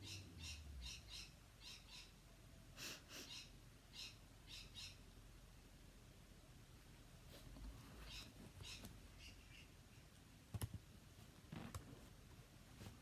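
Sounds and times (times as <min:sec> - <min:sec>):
small bird chirping: 0:00.0 - 0:02.3, 0:03.1 - 0:05.2, 0:07.8 - 0:10.2.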